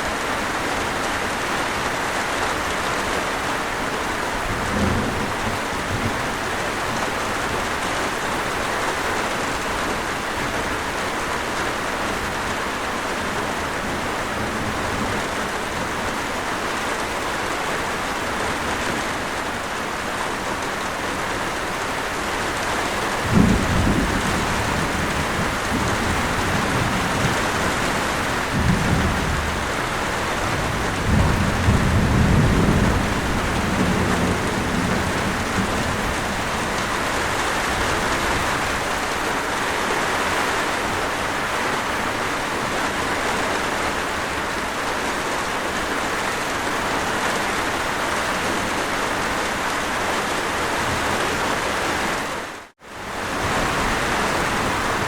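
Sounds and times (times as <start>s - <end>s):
heavy rain: 0.0s - 55.0s
distant thunder rumbles: 4.3s - 7.8s, 23.0s - 39.2s.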